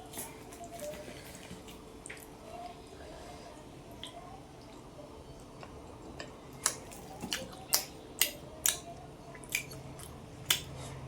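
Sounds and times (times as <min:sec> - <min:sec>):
wet chewing clicks: 0:06.6 - 0:10.8.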